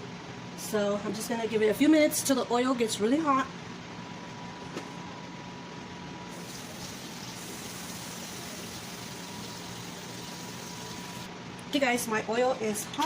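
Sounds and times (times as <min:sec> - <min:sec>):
oil hissing in frying pan: 0:06.3 - 0:11.3.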